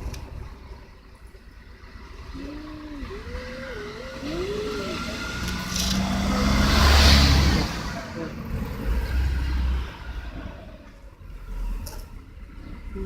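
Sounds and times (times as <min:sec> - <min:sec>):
vehicle engine passing: 0:00.0 - 0:13.0
wavering cries: 0:02.2 - 0:06.5.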